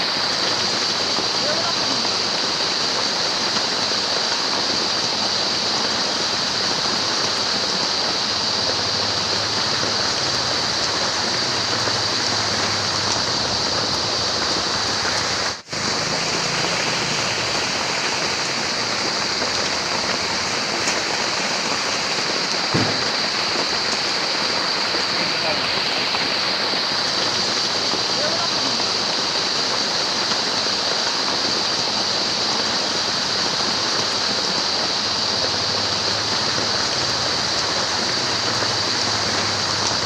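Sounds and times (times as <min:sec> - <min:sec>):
heavy rain falling: 0:00.0 - 0:40.0
faint low thump: 0:22.7 - 0:23.2.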